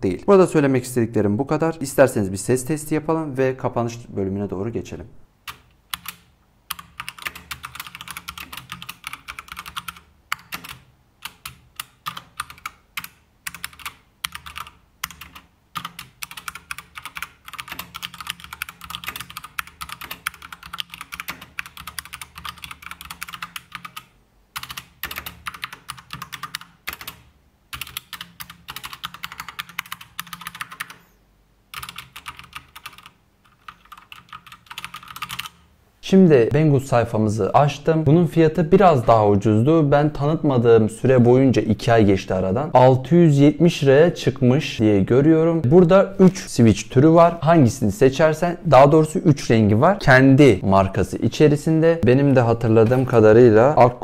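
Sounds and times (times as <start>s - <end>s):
mechanical keyboard typing: 5.5s - 31.0s, 31.7s - 35.6s.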